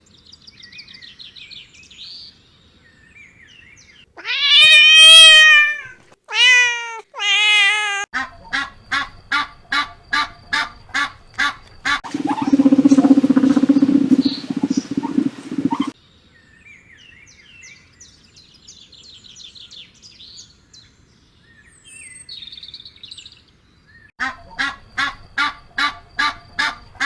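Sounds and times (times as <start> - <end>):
buzzy animal call: 12.0 - 16.0
faint chirping: 12.0 - 16.0
long falling animal calls: 12.0 - 16.0
short animal calls: 12.1 - 15.9.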